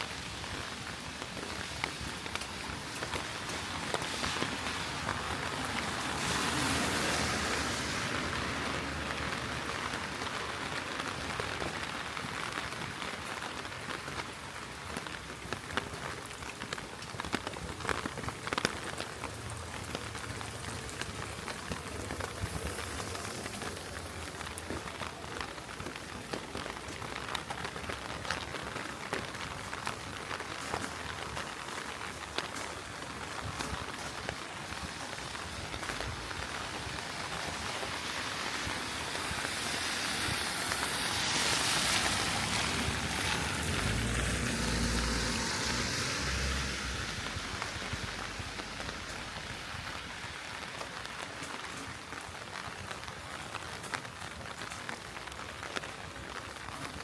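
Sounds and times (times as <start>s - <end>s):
heavy rain falling: 0.0s - 57.0s
tyres hissing on wet road: 0.1s - 57.0s.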